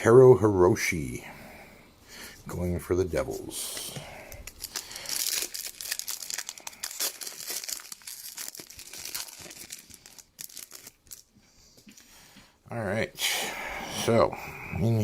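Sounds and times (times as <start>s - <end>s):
plastic wrapper crinkling and tearing: 4.3s - 11.4s.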